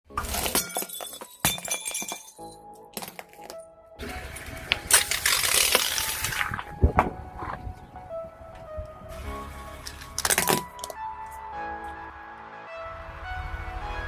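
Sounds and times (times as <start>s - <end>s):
music: 0.0s - 14.0s
brittle objects crunching: 4.7s - 6.8s.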